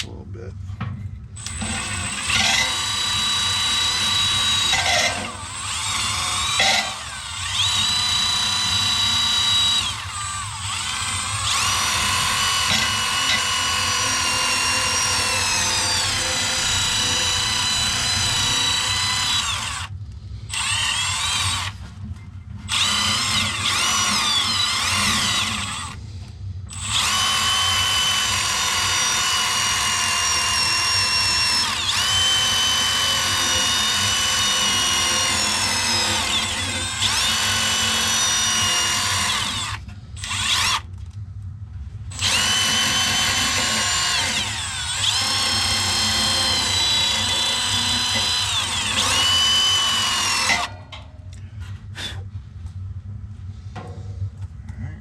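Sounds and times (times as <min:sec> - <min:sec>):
power drill whining: 0:01.4 - 0:19.9, 0:20.5 - 0:21.8, 0:22.7 - 0:26.0, 0:26.7 - 0:40.9, 0:42.1 - 0:50.8.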